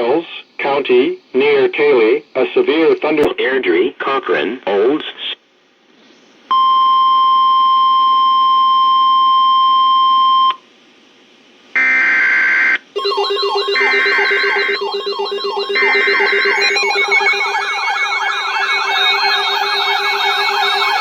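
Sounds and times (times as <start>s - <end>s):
high-pitched alarm tone: 11.8s - 21.0s
screechy digital data tones: 13.0s - 21.0s
wailing sweeping siren tone: 13.0s - 21.0s.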